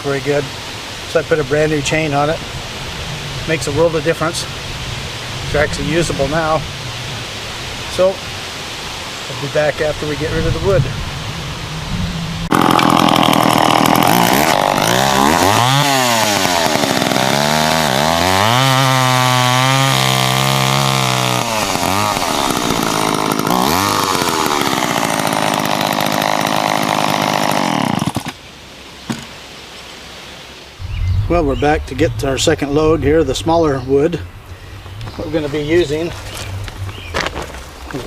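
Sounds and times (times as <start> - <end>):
chainsaw engine revving: 12.4 - 28.4.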